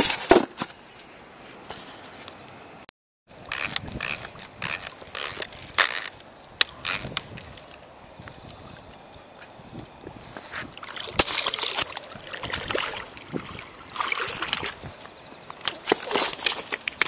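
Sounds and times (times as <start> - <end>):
water splashing and sloshing: 10.4 - 17.0.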